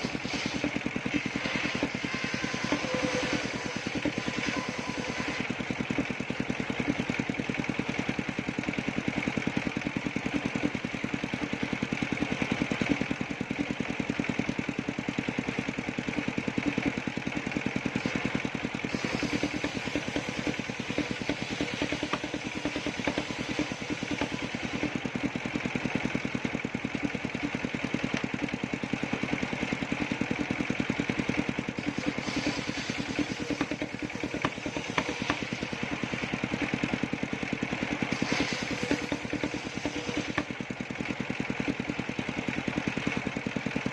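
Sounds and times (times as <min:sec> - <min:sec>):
sawmill engine running: 0:00.0 - 0:43.9.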